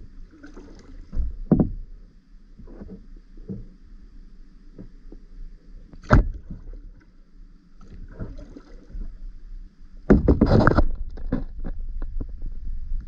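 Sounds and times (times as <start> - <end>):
paddle splashing and clatter: 7.8 - 9.0, 10.1 - 12.4.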